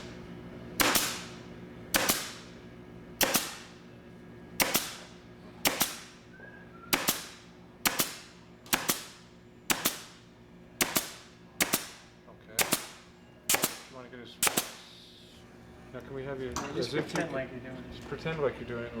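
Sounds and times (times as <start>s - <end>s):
staple gun cracks: 0.8s - 1.3s, 2.0s - 2.5s, 3.2s - 3.7s, 4.6s - 5.1s, 5.7s - 6.1s, 6.9s - 10.2s, 12.6s - 14.8s.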